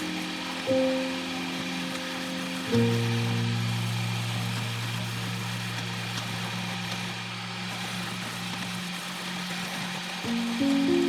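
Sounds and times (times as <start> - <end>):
background music: 0.0 - 4.4
lathe motor humming: 0.0 - 11.0.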